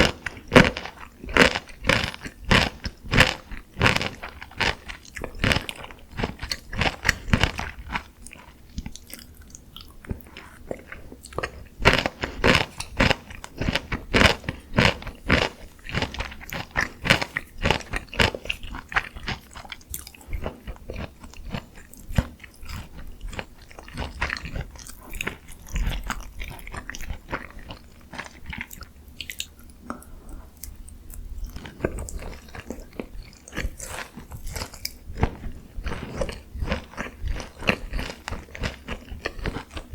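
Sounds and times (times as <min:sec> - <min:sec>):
crunching fried chicken: 0:00.0 - 0:29.7, 0:30.6 - 0:39.9
wet chewing: 0:00.0 - 0:39.9.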